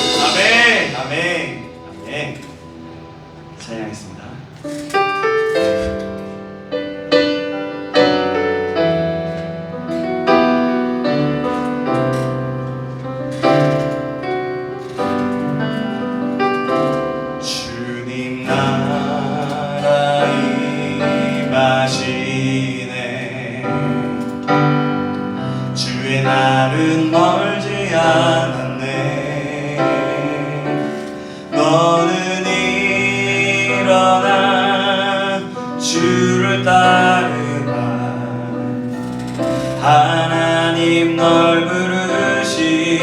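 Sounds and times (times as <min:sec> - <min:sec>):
drums and cymbals: 0:00.0 - 0:03.4, 0:09.8 - 0:22.6
keyboard chords: 0:00.0 - 0:43.0.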